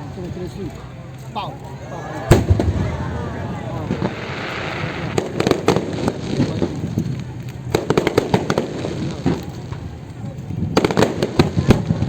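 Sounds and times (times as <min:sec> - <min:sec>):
fireworks bursting and crackling: 0:02.2 - 0:12.0.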